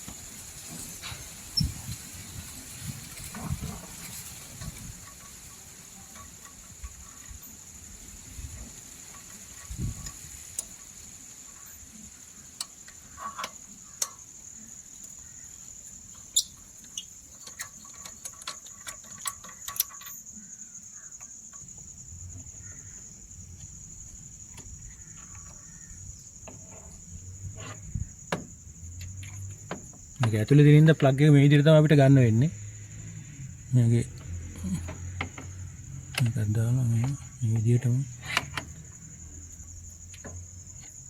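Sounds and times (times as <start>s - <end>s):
insects chirring: 0.0s - 41.0s
hand tools clicking and tapping: 16.3s - 20.3s, 34.1s - 38.9s.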